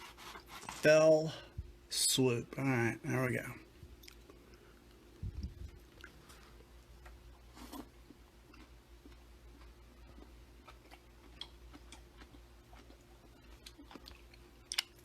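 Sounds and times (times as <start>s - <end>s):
low steady hum: 0.0s - 15.0s
person chewing food: 3.9s - 15.0s.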